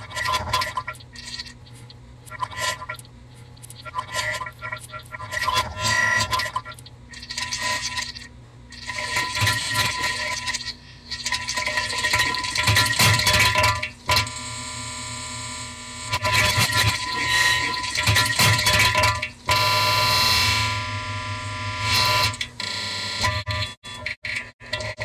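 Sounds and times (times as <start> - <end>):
crackling clicky bursts: 0.1 - 14.4.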